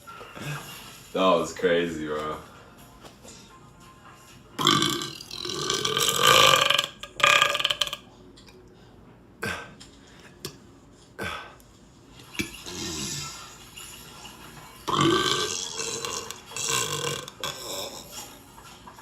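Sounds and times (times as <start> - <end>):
man burping loudly: 4.6 - 8.0, 14.9 - 18.1.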